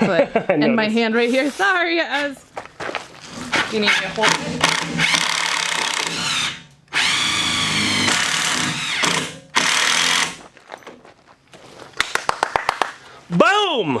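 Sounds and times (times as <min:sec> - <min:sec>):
power drill driving screws: 0:03.3 - 0:10.4
rapid drill clicks: 0:04.2 - 0:10.4.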